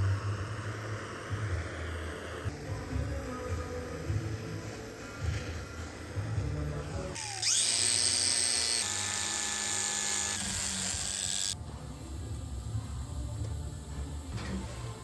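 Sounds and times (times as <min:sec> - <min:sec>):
electric power tool whining: 0:07.2 - 0:11.6.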